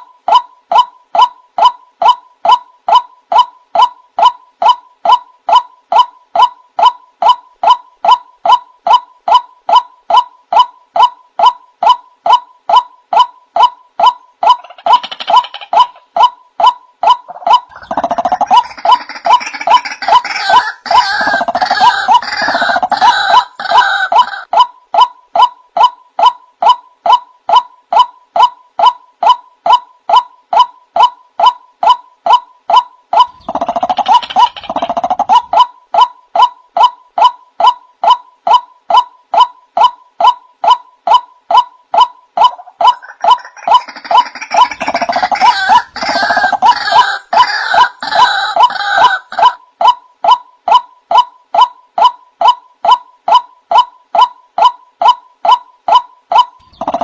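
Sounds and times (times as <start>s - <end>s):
waterhen calling: 17.0s - 24.5s, 42.0s - 49.6s.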